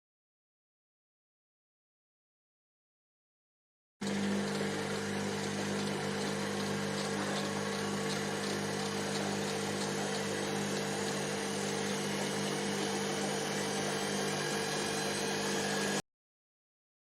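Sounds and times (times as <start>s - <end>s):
motor humming: 4.0s - 16.0s.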